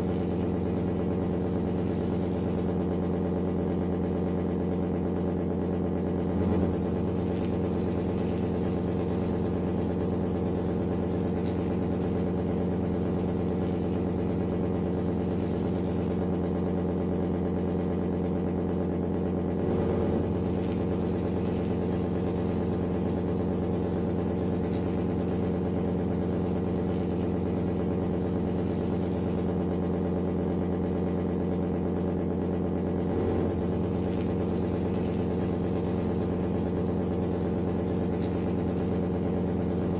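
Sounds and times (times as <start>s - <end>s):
diesel engine idling: 0.0s - 30.8s.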